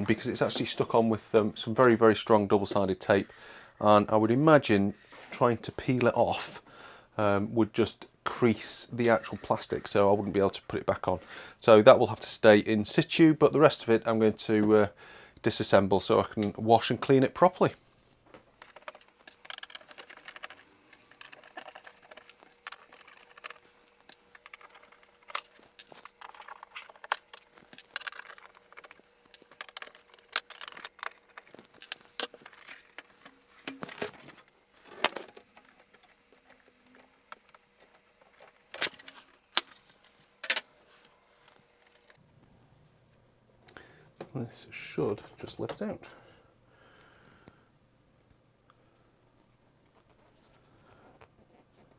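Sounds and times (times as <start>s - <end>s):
faint steady hum: 0.0s - 51.9s
clicks and rattles of plastic case: 18.6s - 40.6s.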